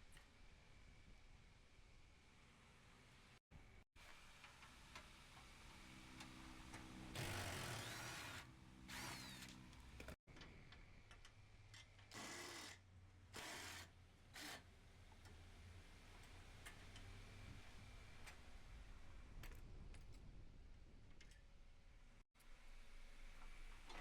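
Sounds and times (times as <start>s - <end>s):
power tool bursts: 7.1s - 9.7s.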